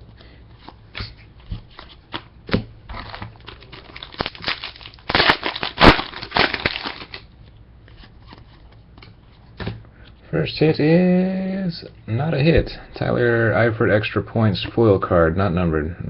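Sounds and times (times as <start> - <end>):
wrapper crinkling and tearing: 2.9 - 7.3.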